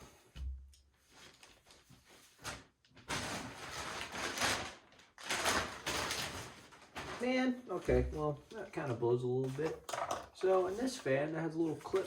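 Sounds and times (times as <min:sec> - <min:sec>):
plastic parts scraping: 0:09.6 - 0:11.0.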